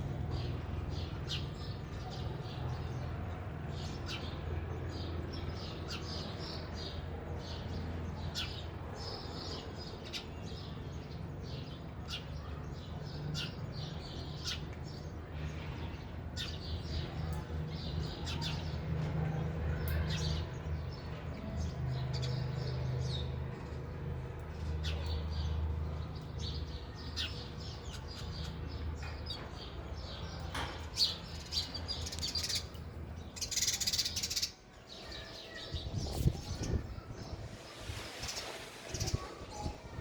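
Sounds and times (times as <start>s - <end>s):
sparrows chirping: 0.0s - 40.0s
rustling flutter: 36.1s - 40.0s.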